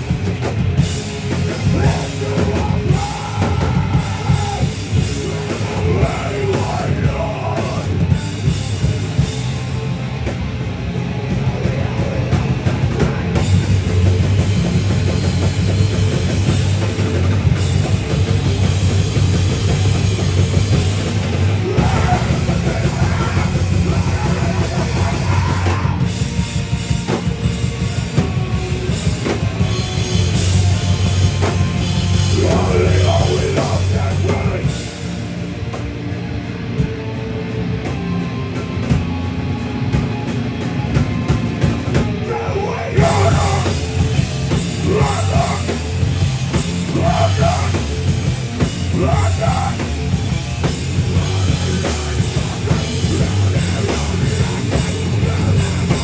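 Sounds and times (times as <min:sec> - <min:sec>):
drum kit pounding: 0:00.0 - 0:56.0
heavy metal band playing: 0:00.0 - 0:56.0
person singing: 0:01.6 - 0:08.1, 0:21.7 - 0:26.2, 0:32.1 - 0:34.9, 0:42.2 - 0:44.0, 0:44.6 - 0:46.0, 0:46.8 - 0:48.0.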